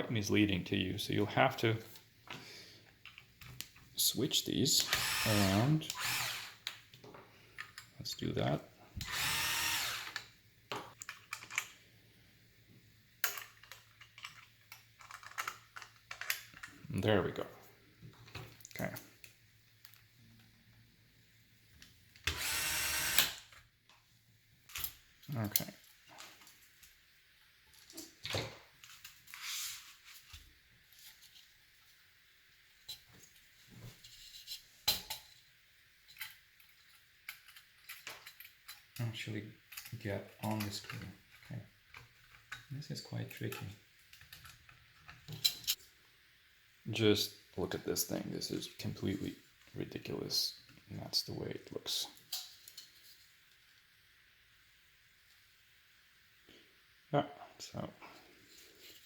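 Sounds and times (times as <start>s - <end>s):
electric screwdriver whirring: 4.8s - 6.7s, 9.0s - 10.2s, 22.2s - 23.5s
small metal parts clicking: 10.9s - 11.8s, 13.2s - 16.8s, 36.1s - 45.8s.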